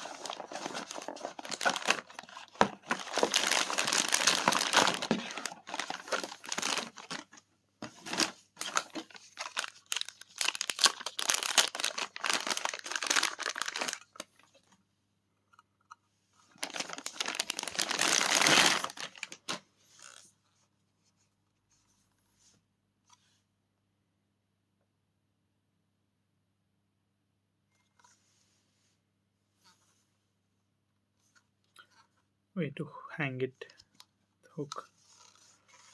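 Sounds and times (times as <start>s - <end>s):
packaging crinkling and tearing: 0.0s - 7.4s, 8.0s - 14.4s, 16.6s - 20.2s
small handling noises: 0.0s - 23.5s, 27.6s - 32.4s, 33.6s - 35.9s.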